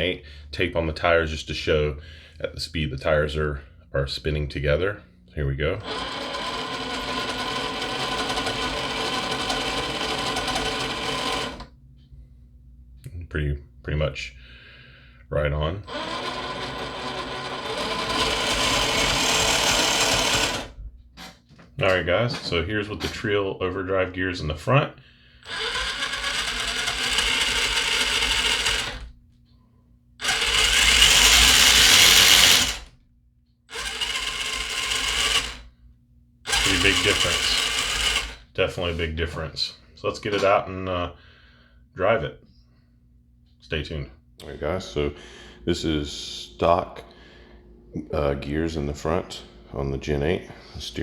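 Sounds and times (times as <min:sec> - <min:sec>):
electric motor gear whine: 0:05.8 - 0:11.7, 0:15.8 - 0:20.8, 0:25.5 - 0:29.1, 0:30.2 - 0:32.9, 0:33.7 - 0:35.6, 0:36.5 - 0:38.4.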